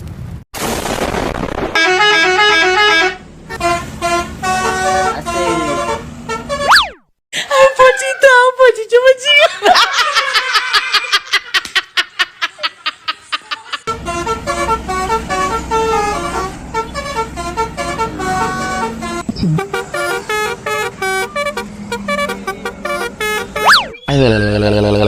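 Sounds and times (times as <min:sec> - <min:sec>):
multi-tone bus horn tune: 0:01.8 - 0:06.8, 0:13.9 - 0:23.9
low engine hum: 0:13.9 - 0:24.4.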